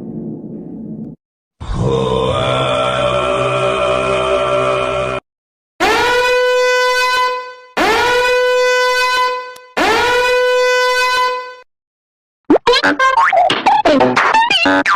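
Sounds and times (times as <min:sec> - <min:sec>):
horn blowing long buzzy notes: 0:05.8 - 0:11.7.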